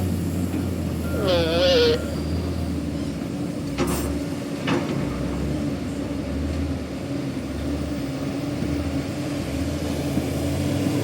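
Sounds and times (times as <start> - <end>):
excavator engine running: 0.0 - 10.9.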